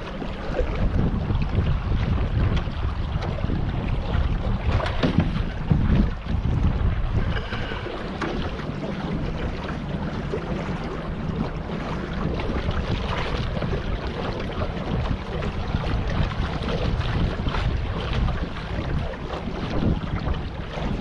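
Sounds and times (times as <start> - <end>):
boat motor running: 0.0 - 21.0
wind buffeting microphone: 0.0 - 21.0.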